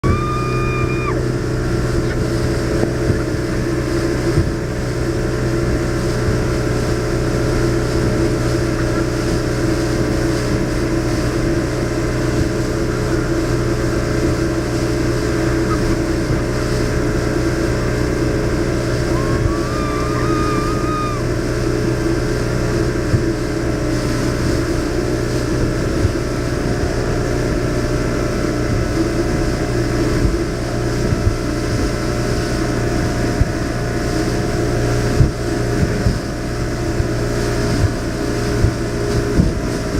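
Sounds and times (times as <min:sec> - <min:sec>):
motorboat engine running: 0:00.0 - 0:39.9
wind noise on microphone: 0:00.0 - 0:39.9
high wavering call: 0:19.1 - 0:21.3.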